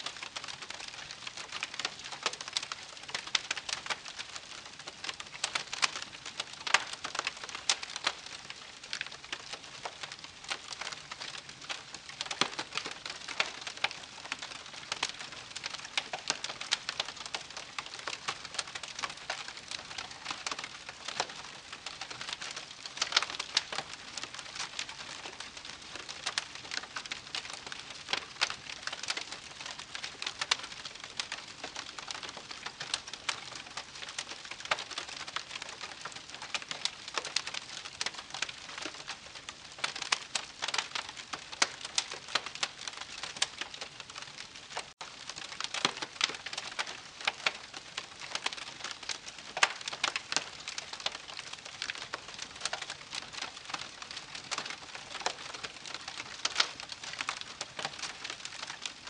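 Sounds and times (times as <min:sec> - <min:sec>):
campfire crackling and popping: 0:00.0 - 0:59.0.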